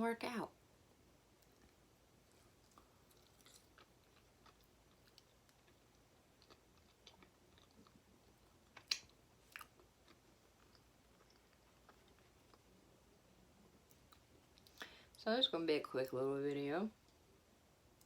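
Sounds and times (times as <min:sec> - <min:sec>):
person chewing: 0:01.4 - 0:12.7, 0:13.8 - 0:14.8.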